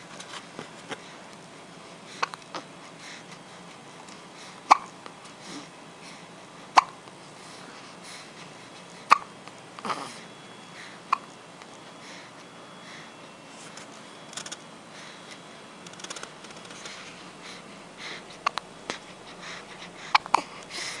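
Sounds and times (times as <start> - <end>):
person hiccuping: 4.7 - 4.9, 9.1 - 10.1.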